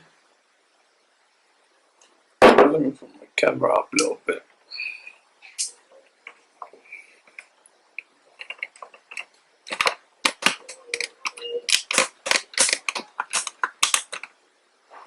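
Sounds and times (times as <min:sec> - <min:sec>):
hard objects clicking and tapping: 0:08.4 - 0:14.3.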